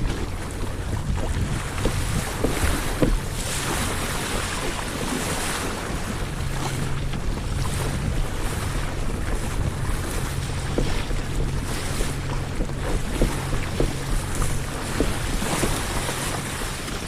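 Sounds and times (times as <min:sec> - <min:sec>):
water slapping along hull: 0:00.0 - 0:17.0
wind buffeting microphone: 0:00.0 - 0:17.0
small knocks: 0:01.8 - 0:03.2.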